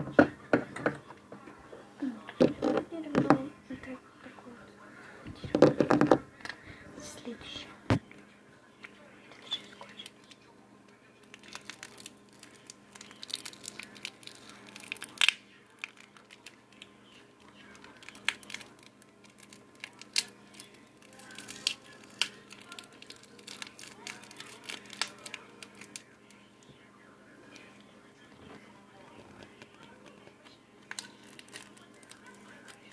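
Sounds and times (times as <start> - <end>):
object crinkling and crackling: 2.3 - 3.5, 9.2 - 26.9, 27.5 - 32.9.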